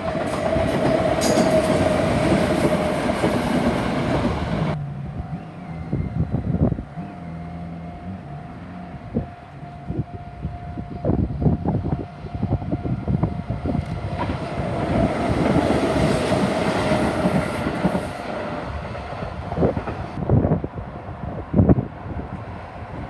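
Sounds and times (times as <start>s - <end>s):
train wheels clacking on rails: 0.0s - 4.8s, 13.8s - 20.2s.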